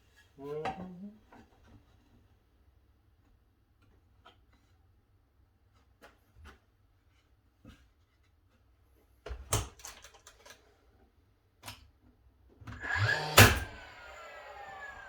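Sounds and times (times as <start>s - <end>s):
small motor whine: 12.7s - 15.0s.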